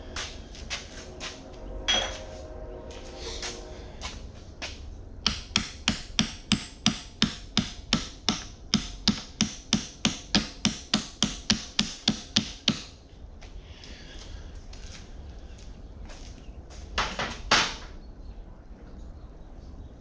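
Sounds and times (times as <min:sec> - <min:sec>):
hammer blows: 0:00.2 - 0:13.0.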